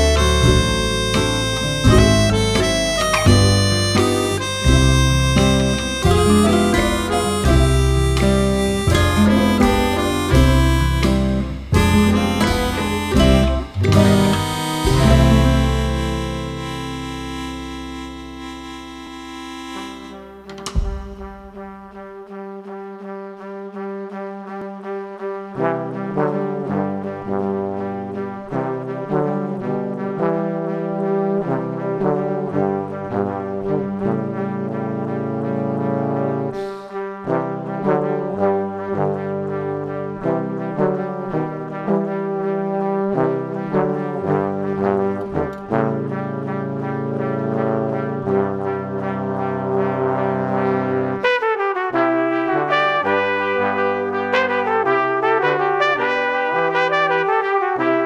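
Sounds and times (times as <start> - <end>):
stepping bass line: 0.0 - 21.8
sustained chords: 0.0 - 21.8.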